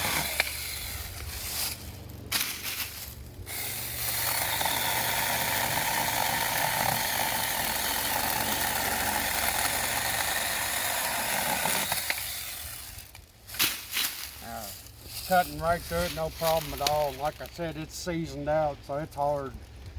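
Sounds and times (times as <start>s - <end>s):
mini chainsaw cutting log: 0.0s - 14.4s.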